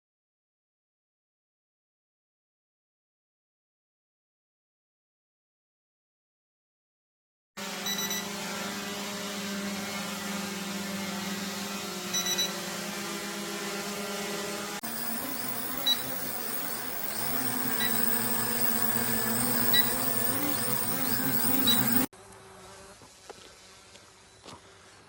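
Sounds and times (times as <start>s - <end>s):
drone propellers buzzing: 7.6s - 22.1s
short high beeps: 15.1s - 22.1s.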